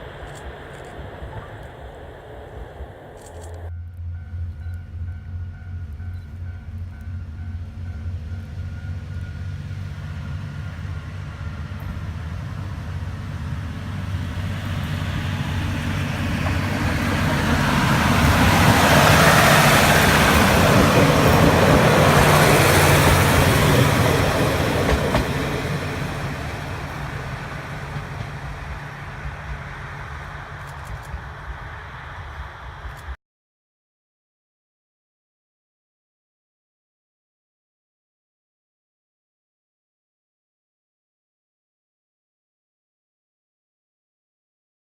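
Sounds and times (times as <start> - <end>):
diesel railcar passing: 0.0 - 33.2.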